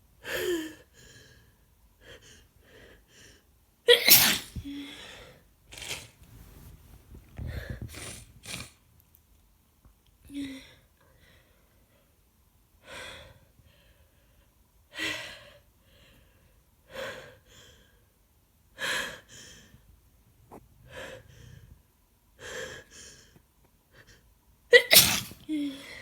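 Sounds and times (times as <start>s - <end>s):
soft breaths: 4.4s - 8.8s
woman gasping inhalations: 24.8s - 26.0s.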